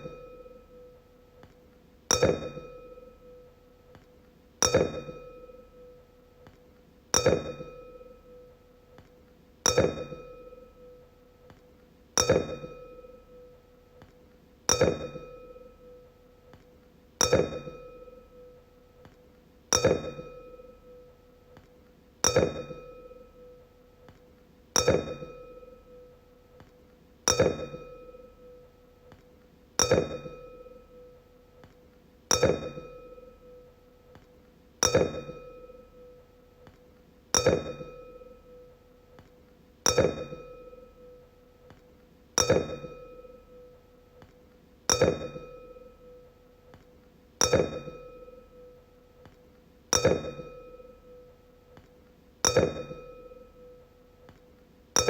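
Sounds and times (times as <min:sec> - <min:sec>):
wine glass ringing when tapped: 0:00.0 - 0:00.9, 0:02.1 - 0:03.5, 0:04.6 - 0:06.0, 0:07.2 - 0:08.5, 0:09.7 - 0:11.0, 0:12.2 - 0:13.6, 0:14.7 - 0:16.0, 0:17.2 - 0:18.6, 0:19.7 - 0:21.2, 0:22.2 - 0:23.6, 0:24.8 - 0:26.7, 0:27.3 - 0:28.7, 0:29.8 - 0:31.2, 0:32.3 - 0:33.7, 0:34.8 - 0:36.3, 0:37.4 - 0:39.3, 0:39.9 - 0:41.8, 0:42.4 - 0:43.8, 0:44.9 - 0:46.4, 0:47.4 - 0:51.4, 0:52.4 - 0:53.9.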